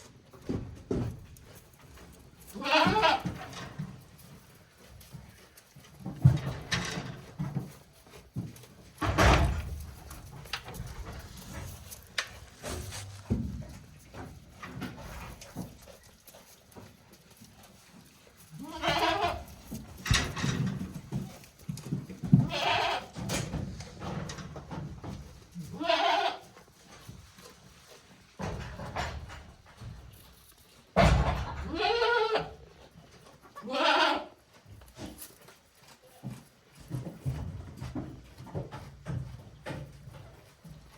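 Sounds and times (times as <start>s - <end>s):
bumps and rustling: 0.0s - 32.0s
goat kids bleating: 2.5s - 3.4s, 18.5s - 19.6s, 22.4s - 23.2s, 25.6s - 26.6s, 31.6s - 32.6s, 33.5s - 34.4s.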